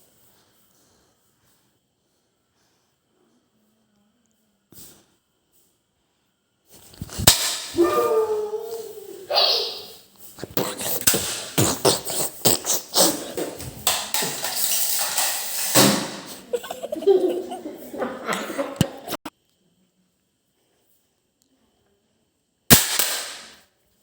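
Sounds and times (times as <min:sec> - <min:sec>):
people laughing and shouting: 0:16.3 - 0:19.2.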